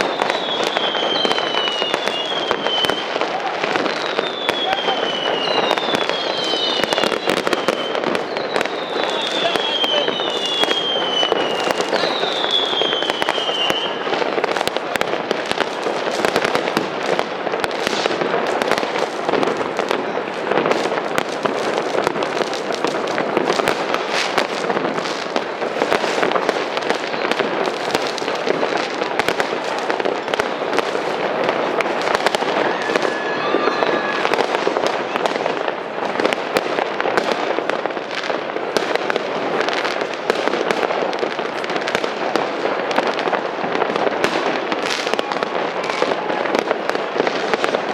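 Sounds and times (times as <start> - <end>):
falling firework whistles: 0.0 - 31.0, 32.0 - 36.4
fireworks crackling and banging: 0.0 - 47.9.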